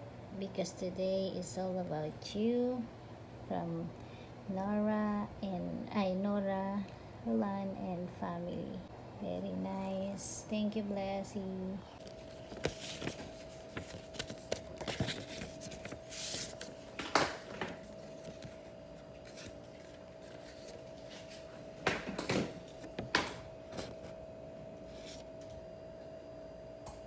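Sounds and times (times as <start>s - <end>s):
packaging rustling: 11.9s - 24.2s.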